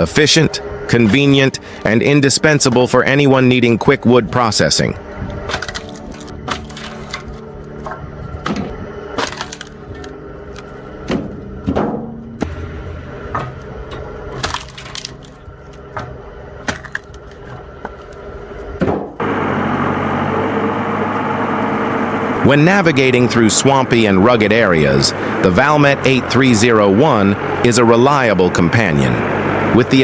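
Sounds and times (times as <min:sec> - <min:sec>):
electric motor humming: 0:00.0 - 0:30.0
firewood cracking and snapping: 0:01.0 - 0:03.0, 0:05.1 - 0:19.2.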